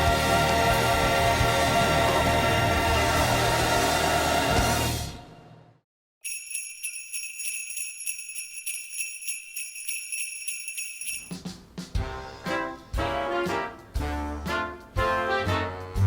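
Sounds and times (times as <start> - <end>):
jingle bells shaken: 6.2 - 11.4.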